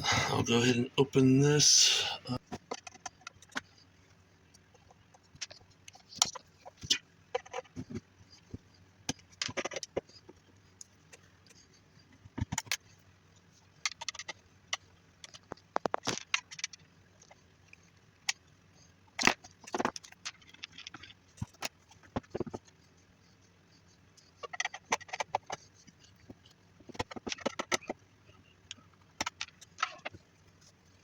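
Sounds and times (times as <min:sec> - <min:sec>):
plastic case clicks and clatter: 0:26.9 - 0:28.0.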